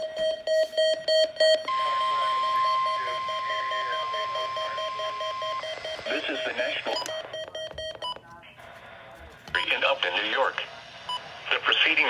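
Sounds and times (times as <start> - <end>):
steady alarm tone: 0.0 - 8.1.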